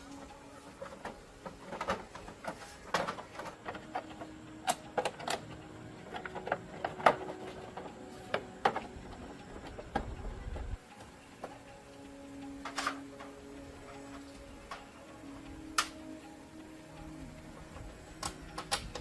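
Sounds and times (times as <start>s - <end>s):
hand tools clicking and knocking: 0.0s - 11.7s, 12.4s - 15.0s.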